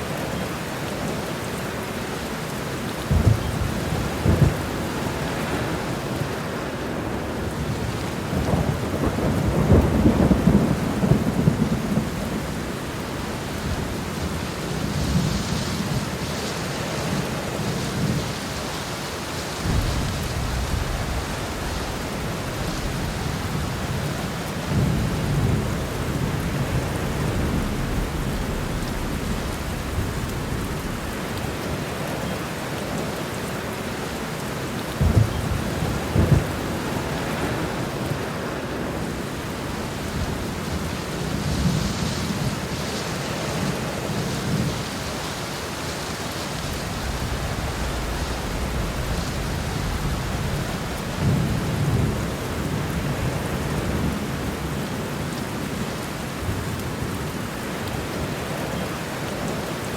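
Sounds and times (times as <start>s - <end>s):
heavy rain: 0.0s - 59.9s
thunder rumbling: 3.0s - 6.4s, 7.0s - 14.0s, 19.6s - 33.1s, 34.9s - 39.1s, 46.6s - 54.6s
thunder crack: 19.6s - 32.0s.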